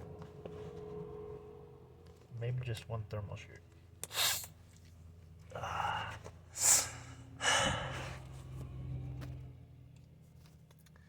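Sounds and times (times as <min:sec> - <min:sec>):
low steady hum: 0:00.0 - 0:11.0
man breathing out heavily: 0:05.6 - 0:08.3.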